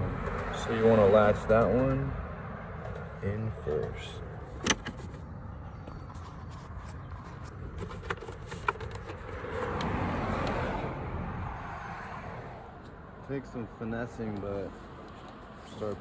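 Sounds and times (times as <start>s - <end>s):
vehicle noise: 0.0s - 16.0s.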